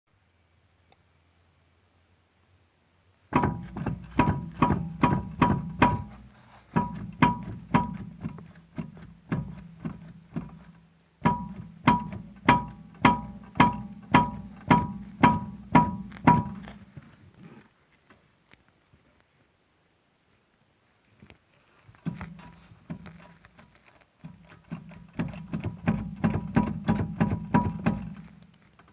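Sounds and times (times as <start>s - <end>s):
metallic knocks of steering joint: 3.4s - 16.8s, 24.7s - 28.3s.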